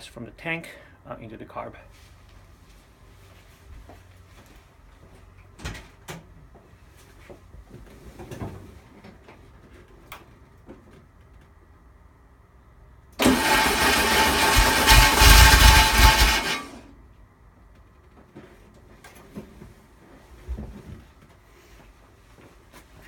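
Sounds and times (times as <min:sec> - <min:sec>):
starter cranking car engine: 0:13.2 - 0:16.9.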